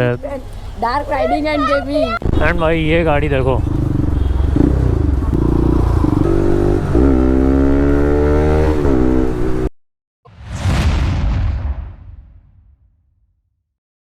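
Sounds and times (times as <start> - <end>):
motorcycle revving: 2.2 - 9.8
loud bang-like burst: 10.3 - 13.0.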